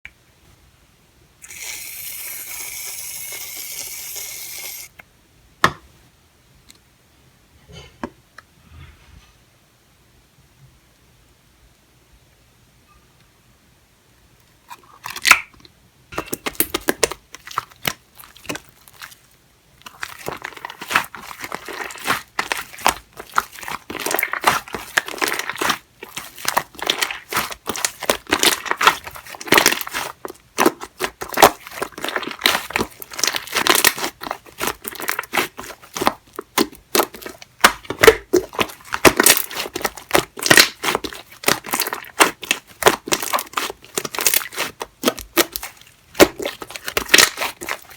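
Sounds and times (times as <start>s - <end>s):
slime crackling and popping: 16.4s - 19.2s, 19.8s - 47.9s.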